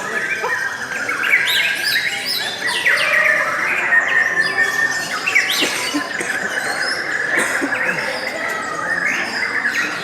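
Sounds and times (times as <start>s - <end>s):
lovebirds chirping and squawking: 0.0s - 7.3s.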